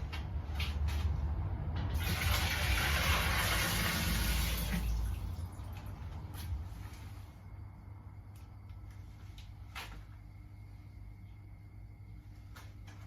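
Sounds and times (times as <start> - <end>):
water running into kettle: 2.0 - 6.0.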